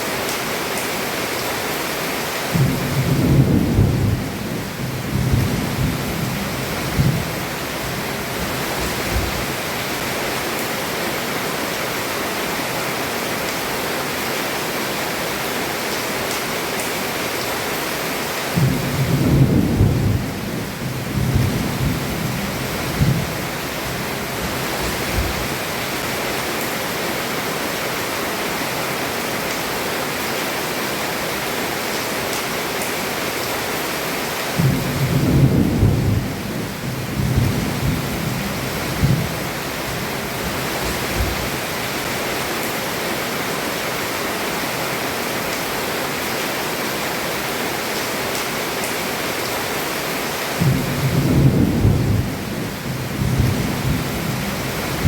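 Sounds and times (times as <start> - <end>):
heavy rain on a roof: 0.0 - 55.0
thunder rumbling: 2.5 - 9.6, 18.6 - 25.6, 34.6 - 41.6, 50.6 - 55.0.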